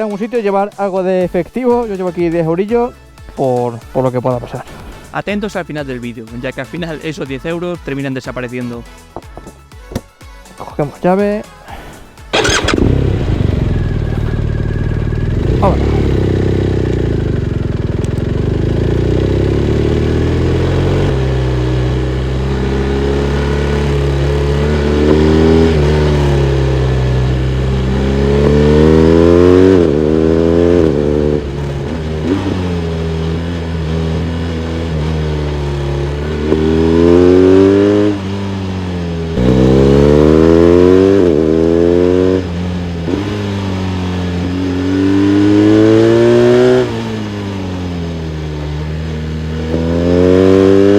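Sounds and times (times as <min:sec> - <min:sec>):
motorcycle engine accelerating: 0:12.3 - 0:50.9.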